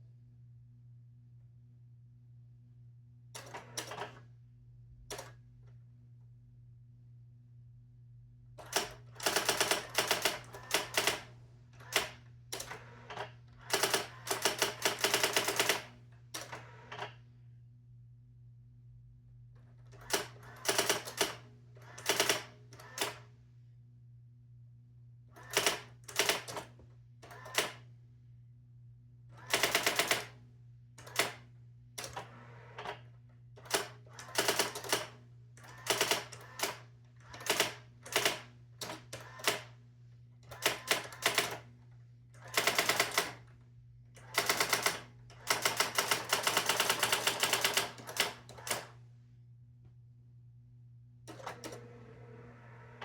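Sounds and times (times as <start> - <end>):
electronic typewriter clicking: 8.6 - 11.2, 13.6 - 15.9, 29.5 - 30.3, 42.4 - 43.4, 44.2 - 48.9.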